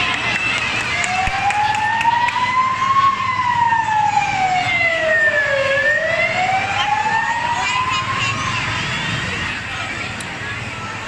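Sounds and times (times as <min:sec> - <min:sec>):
siren wailing: 0:00.8 - 0:09.6.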